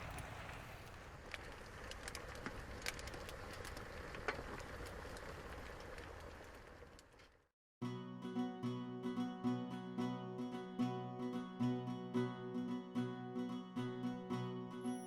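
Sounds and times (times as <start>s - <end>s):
campfire crackling and popping: 0.0s - 7.2s.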